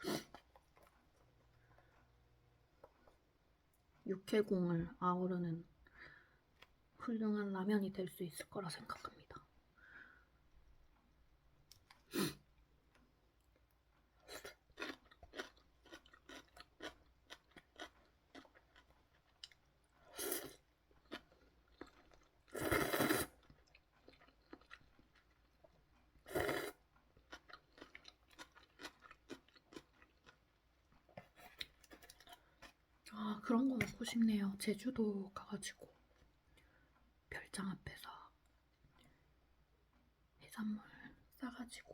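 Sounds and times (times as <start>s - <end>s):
person chewing noodles: 12.9s - 33.0s.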